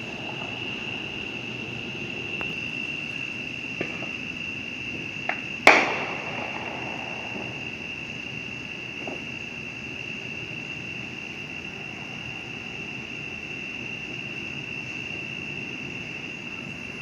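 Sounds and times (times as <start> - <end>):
distant fireworks popping: 0.0 - 11.7
insect chorus: 0.0 - 17.0
loud firework bang: 5.0 - 9.4.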